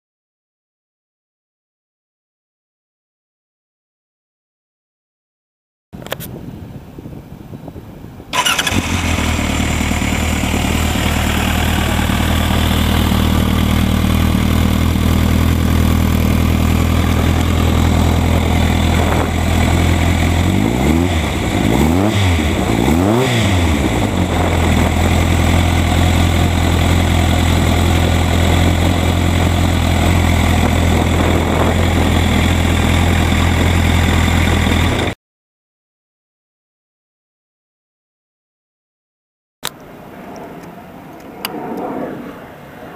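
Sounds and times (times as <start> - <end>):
motorcycle engine idling and revving: 8.3 - 35.2.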